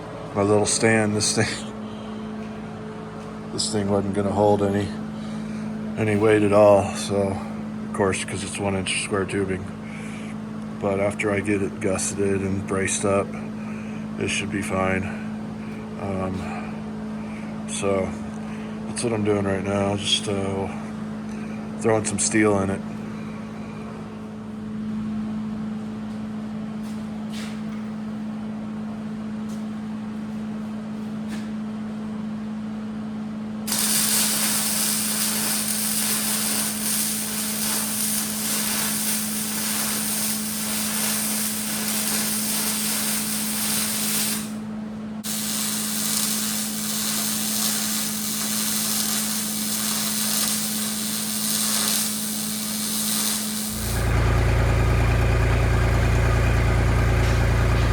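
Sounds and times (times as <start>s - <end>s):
welding arc sizzling: 33.7s - 57.9s
constant low hum: 53.1s - 57.9s.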